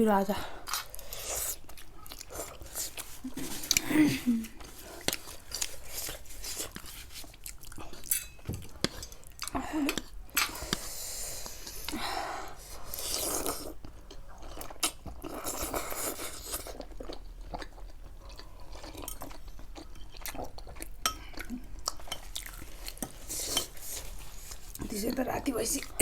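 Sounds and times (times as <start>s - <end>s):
person chewing crunchy food: 0.6s - 12.0s, 12.7s - 24.8s.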